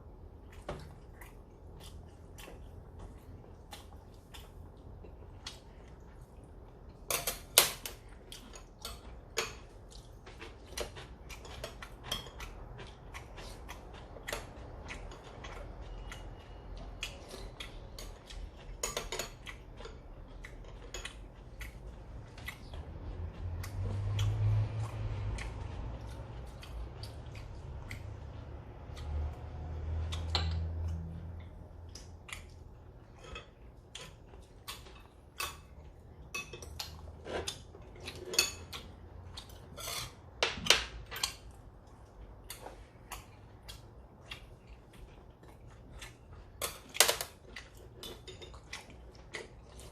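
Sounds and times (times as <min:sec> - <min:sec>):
chewing: 0:00.3 - 0:40.3, 0:41.1 - 0:49.9
chopsticks and spoons tapping dishes: 0:32.4 - 0:41.5.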